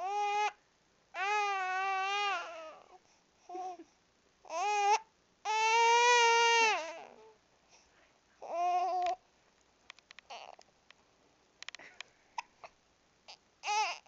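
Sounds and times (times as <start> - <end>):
baby crying: 0.0 - 0.6, 1.2 - 3.0, 4.5 - 7.3, 10.3 - 10.6, 13.3 - 14.0.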